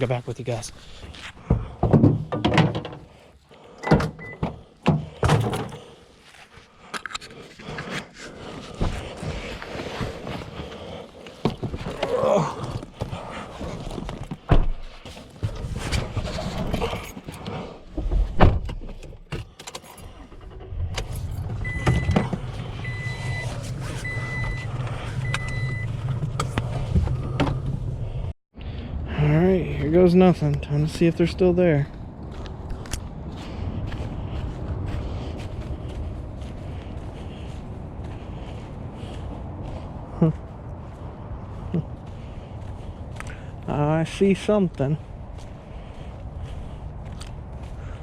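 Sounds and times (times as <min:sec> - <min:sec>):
footsteps: 0:04.5 - 0:18.4, 0:31.8 - 0:43.6, 0:44.4 - 0:48.0
wind rumbling on microphone: 0:26.1 - 0:43.7.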